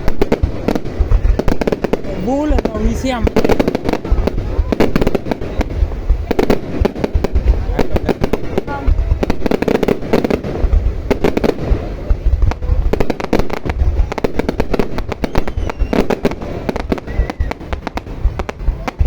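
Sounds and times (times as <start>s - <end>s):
fireworks booming: 0.0s - 19.0s
fireworks cracking: 0.0s - 19.0s.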